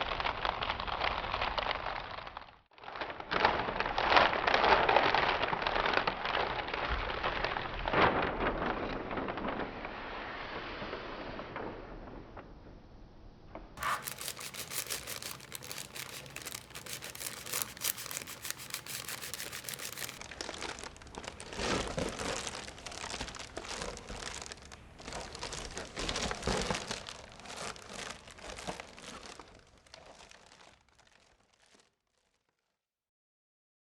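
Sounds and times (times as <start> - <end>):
plastic crinkling: 13.8 - 21.4.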